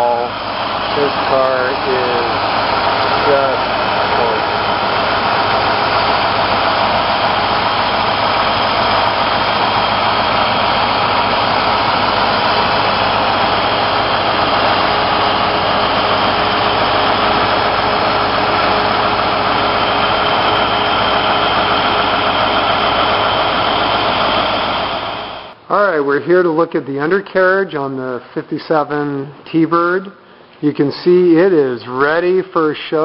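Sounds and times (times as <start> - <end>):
car engine idling: 0.0 - 25.6.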